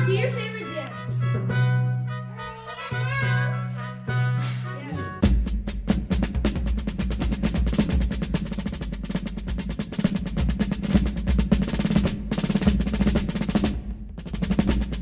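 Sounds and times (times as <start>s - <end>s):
drum-heavy dance music: 0.0s - 1.4s, 4.8s - 15.0s.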